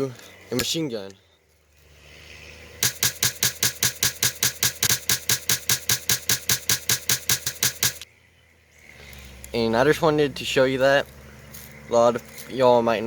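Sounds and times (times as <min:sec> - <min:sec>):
bb gun firing rapid shots: 0:02.8 - 0:08.0.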